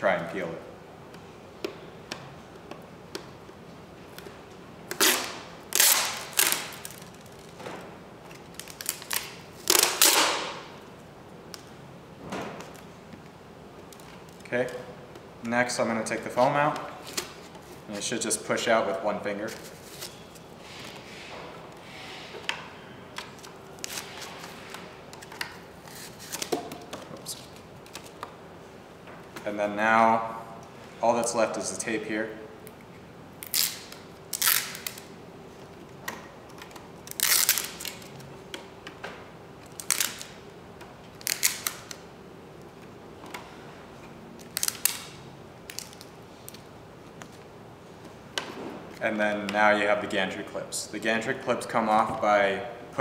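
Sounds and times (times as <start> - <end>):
tape ripping off plastic: 4.9 - 7.6, 8.3 - 10.7, 33.4 - 35.1, 37.0 - 38.3, 39.6 - 40.4, 41.1 - 42.0, 44.4 - 46.6.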